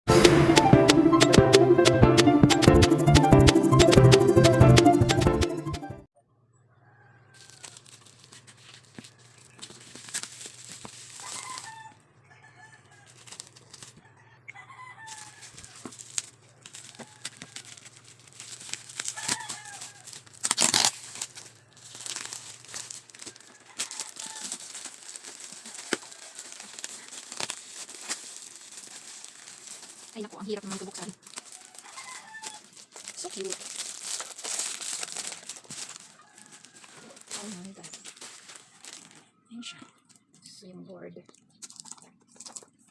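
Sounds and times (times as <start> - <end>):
packaging crinkling and tearing: 7.4 - 11.9, 13.0 - 14.0, 15.0 - 39.3, 41.6 - 42.9.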